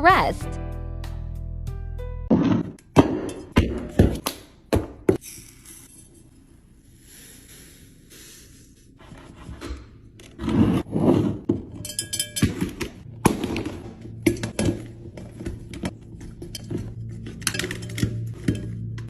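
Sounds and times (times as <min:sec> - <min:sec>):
containers knocking and clinking: 0:11.5 - 0:19.0.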